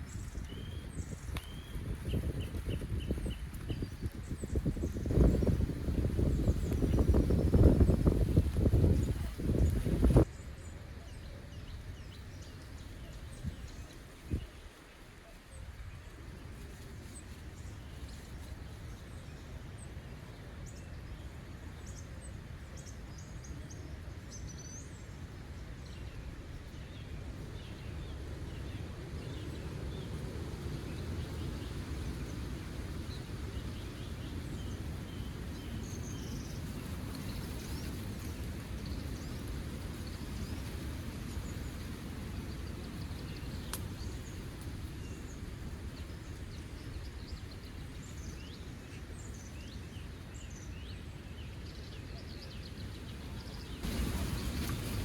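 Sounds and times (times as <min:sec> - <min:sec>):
small birds chirping: 0:00.0 - 0:15.4, 0:26.7 - 0:55.0
low outdoor rumble: 0:52.1 - 0:55.0.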